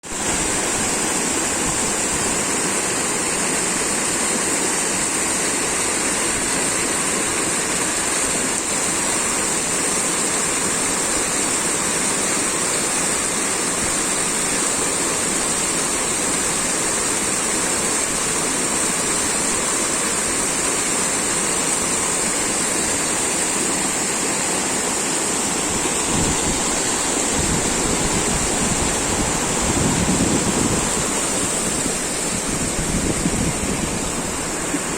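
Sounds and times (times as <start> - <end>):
waterfall rushing: 0.0 - 34.9
wind buffeting microphone: 25.7 - 34.9.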